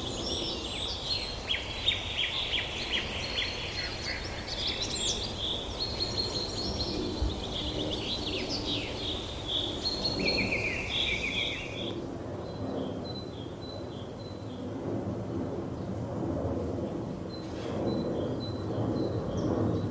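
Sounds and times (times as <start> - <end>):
small birds chirping and trilling: 0.0 - 12.0
steady background hiss: 0.0 - 12.0.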